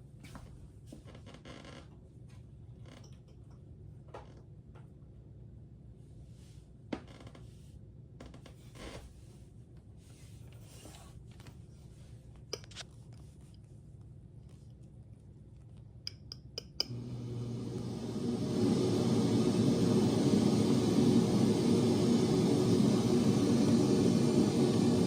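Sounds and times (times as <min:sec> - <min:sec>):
heat pump running: 0:16.8 - 0:25.0.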